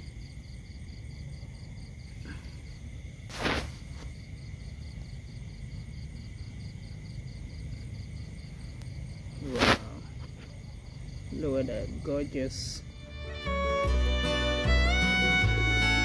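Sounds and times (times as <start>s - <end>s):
crickets chirping: 0.0s - 16.0s
loud rustle: 3.3s - 4.1s, 9.4s - 10.1s.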